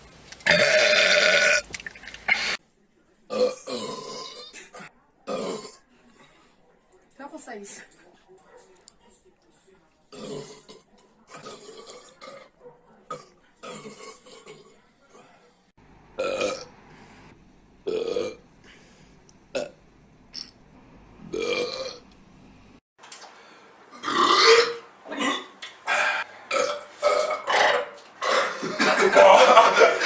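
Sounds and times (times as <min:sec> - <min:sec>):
people burping: 0:00.4 - 0:02.6, 0:03.3 - 0:05.8, 0:10.1 - 0:12.5, 0:13.1 - 0:14.7, 0:16.2 - 0:16.7, 0:17.9 - 0:18.4, 0:21.3 - 0:22.0, 0:23.9 - 0:30.0.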